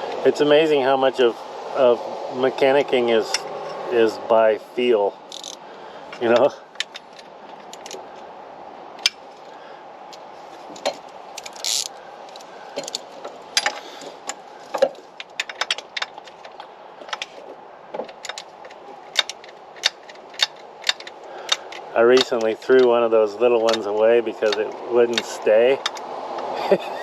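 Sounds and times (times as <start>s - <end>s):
metal tools clinking: 5.3s - 8.0s, 10.7s - 17.4s, 18.0s - 26.0s.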